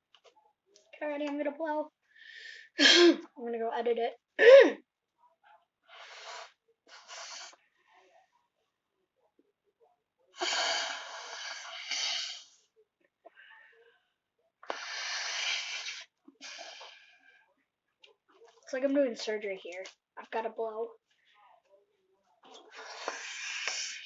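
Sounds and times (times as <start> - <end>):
person blowing into slime: 14.7 - 16.8, 22.8 - 24.0.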